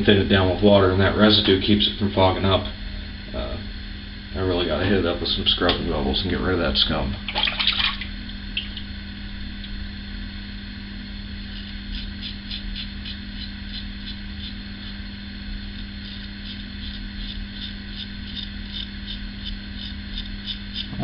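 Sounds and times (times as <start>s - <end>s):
low hum: 0.0s - 21.0s
razor scraping stubble: 11.3s - 21.0s.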